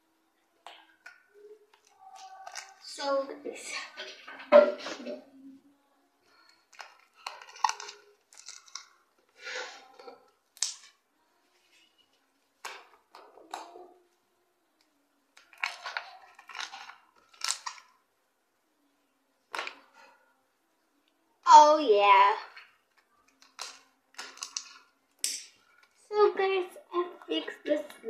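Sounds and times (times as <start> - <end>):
slime squelching and crackling: 0.6 - 4.3, 6.3 - 11.0, 15.4 - 18.0, 21.5 - 28.0.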